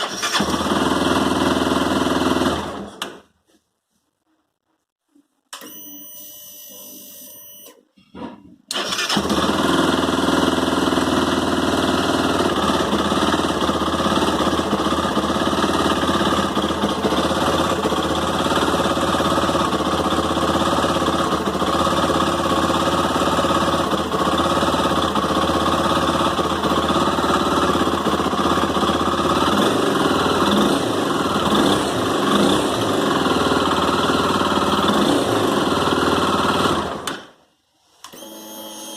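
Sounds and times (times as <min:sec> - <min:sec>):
motorcycle engine running: 0:00.2 - 0:02.9, 0:09.2 - 0:37.0.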